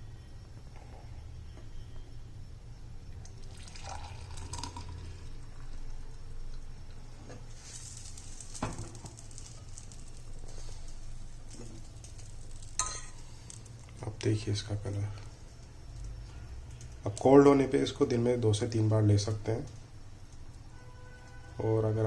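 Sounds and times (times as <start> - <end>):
liquid trickling and splashing: 3.2 - 5.8.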